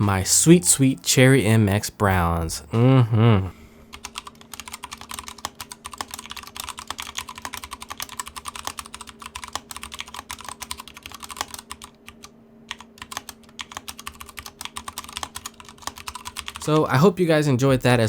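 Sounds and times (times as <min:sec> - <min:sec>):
fast mechanical keyboard typing: 0:03.9 - 0:17.0.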